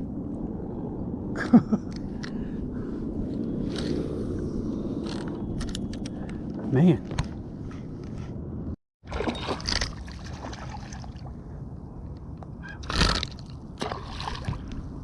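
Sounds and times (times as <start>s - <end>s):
low rumble: 0.0s - 8.8s
water sloshing against kayak: 9.0s - 11.4s.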